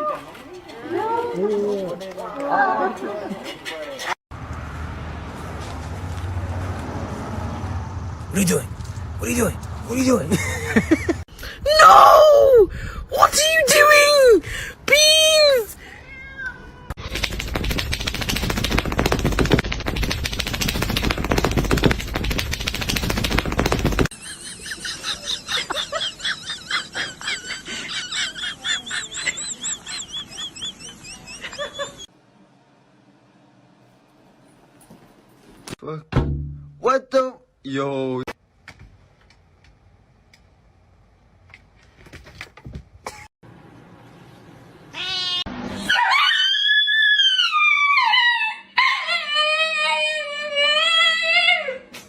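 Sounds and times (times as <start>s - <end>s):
birds chirping: 27.6s - 32.1s
dog howling: 45.9s - 51.9s.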